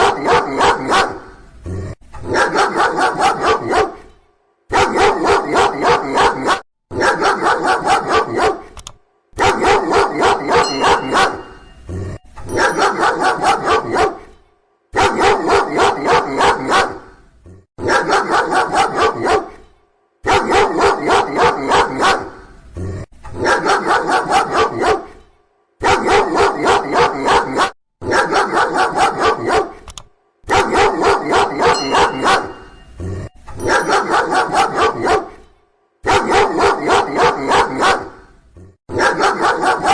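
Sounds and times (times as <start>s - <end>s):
dog barking rapidly: 0.0s - 1.3s, 2.2s - 4.0s, 4.7s - 8.8s, 9.4s - 11.7s, 12.5s - 14.3s, 15.0s - 17.1s, 17.8s - 19.6s, 20.2s - 22.4s, 23.3s - 25.1s, 25.8s - 29.8s, 30.5s - 32.8s, 33.6s - 35.4s, 36.0s - 38.3s, 38.9s - 39.9s.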